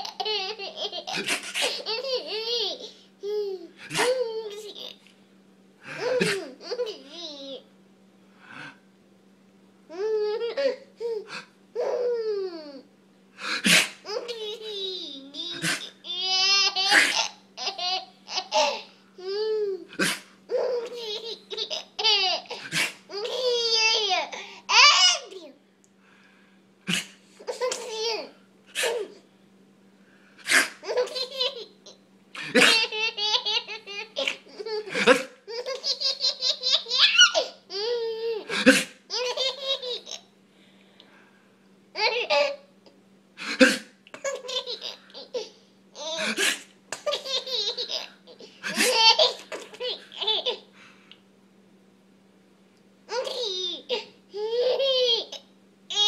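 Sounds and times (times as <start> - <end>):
baby laughing: 0.0 - 5.0, 5.9 - 7.6, 9.9 - 12.8, 13.6 - 25.5, 26.9 - 29.2, 30.5 - 40.3, 42.0 - 42.6, 43.6 - 50.7, 53.1 - 56.0
adult fake sneezes: 1.1 - 1.8, 3.8 - 4.2, 5.9 - 6.6, 13.4 - 14.0, 15.5 - 16.0, 16.9 - 17.2, 19.9 - 20.4, 22.6 - 23.0, 26.9 - 27.2, 28.7 - 29.2, 30.4 - 30.8, 32.4 - 32.8, 34.9 - 35.4, 38.5 - 39.0, 43.4 - 44.0, 46.2 - 46.8, 48.6 - 49.0.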